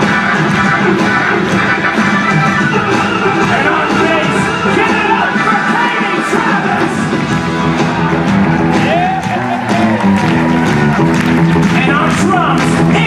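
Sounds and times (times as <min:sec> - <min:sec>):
rock band playing: 0:00.0 - 0:13.0
person singing: 0:01.8 - 0:07.1.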